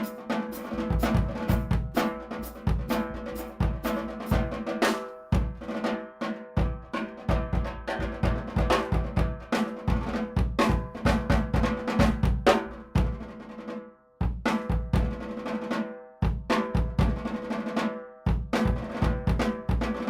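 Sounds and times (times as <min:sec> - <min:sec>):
bass drum: 0:00.0 - 0:04.7, 0:05.4 - 0:05.7, 0:06.6 - 0:13.4, 0:14.2 - 0:15.2, 0:16.2 - 0:17.2, 0:18.3 - 0:20.0
ringing snare drum strokes: 0:00.0 - 0:13.8.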